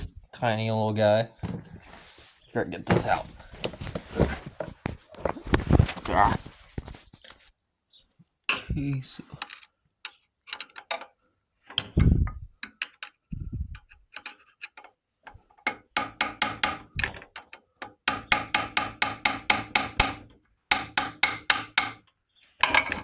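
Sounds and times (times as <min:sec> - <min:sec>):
dull low thumps: 0:12.0 - 0:12.6, 0:13.3 - 0:13.8.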